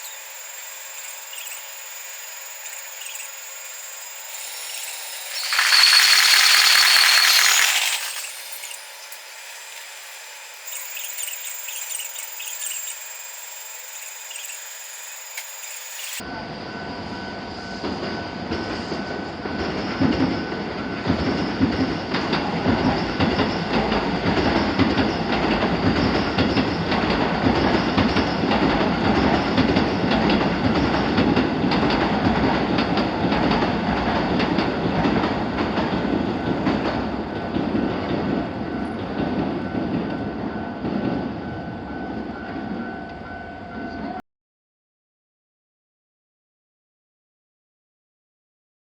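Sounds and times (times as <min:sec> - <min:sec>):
steady high ringing tone: 0:00.0 - 0:17.8.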